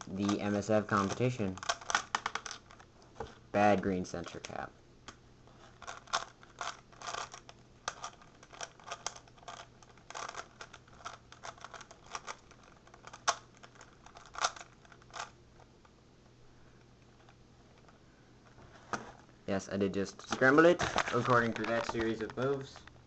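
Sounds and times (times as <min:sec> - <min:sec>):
puzzle cube clicking: 0:00.2 - 0:02.9, 0:05.8 - 0:15.4.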